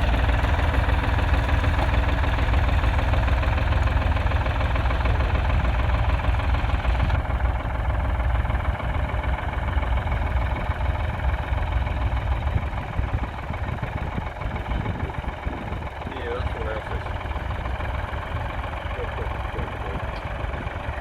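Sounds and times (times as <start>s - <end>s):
diesel tractor engine running: 0.0s - 21.0s.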